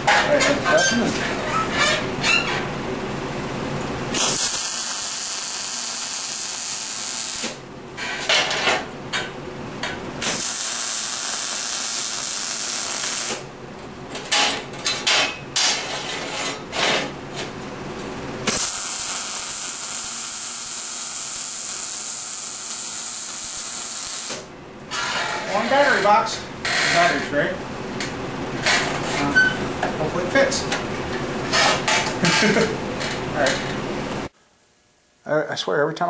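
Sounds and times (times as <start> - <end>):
electric arc welding hissing: 4.1 - 7.6, 10.2 - 13.5, 18.4 - 24.5.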